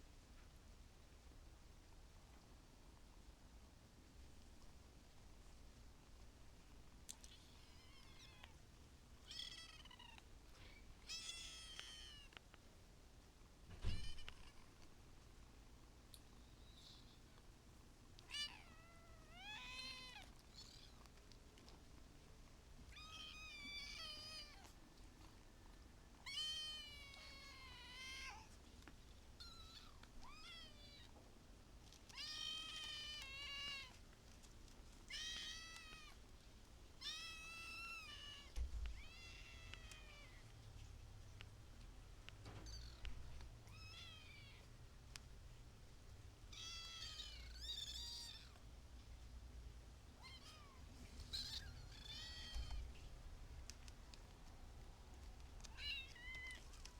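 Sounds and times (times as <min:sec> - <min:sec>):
kittens meowing: 0:09.2 - 0:12.4, 0:13.7 - 0:14.8, 0:18.2 - 0:21.1, 0:22.9 - 0:24.7, 0:26.2 - 0:28.5, 0:29.4 - 0:31.2, 0:32.1 - 0:34.0, 0:35.1 - 0:36.2, 0:37.0 - 0:40.5, 0:42.5 - 0:44.7, 0:46.5 - 0:48.6, 0:50.2 - 0:53.0, 0:55.6 - 0:56.7.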